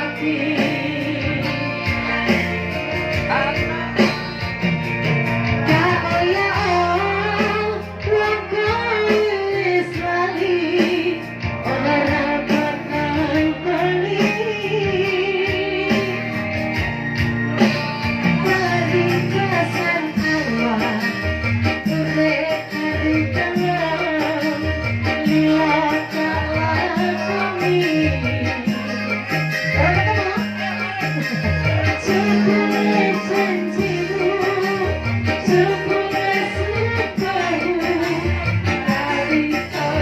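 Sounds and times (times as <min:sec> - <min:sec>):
steady bass beat: 0:00.0 - 0:09.0, 0:23.0 - 0:40.0
plucked guitar: 0:00.0 - 0:40.0.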